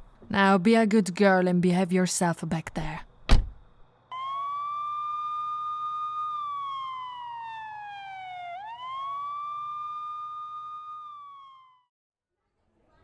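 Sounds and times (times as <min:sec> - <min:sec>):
police siren wailing: 0:04.1 - 0:11.9.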